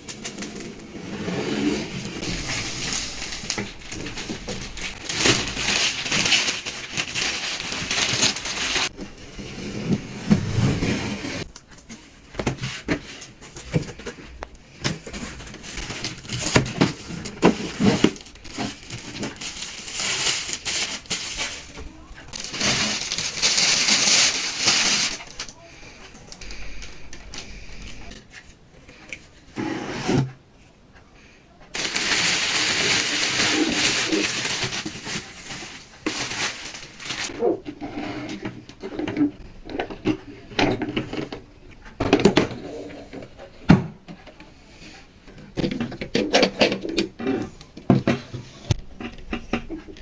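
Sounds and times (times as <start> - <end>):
packaging rustling and crinkling: 0.0 - 29.4, 31.7 - 37.7.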